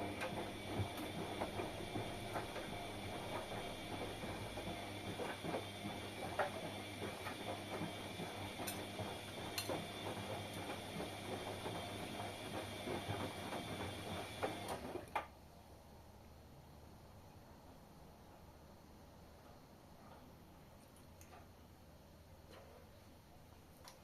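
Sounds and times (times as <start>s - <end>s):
washing machine motor whine: 0.0s - 15.2s
washing machine clicks and rattles: 0.0s - 15.3s.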